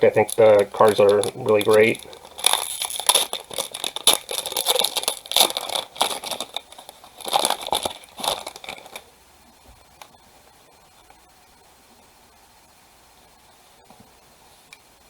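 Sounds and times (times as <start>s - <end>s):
wrapper crinkling and tearing: 0.0s - 9.1s.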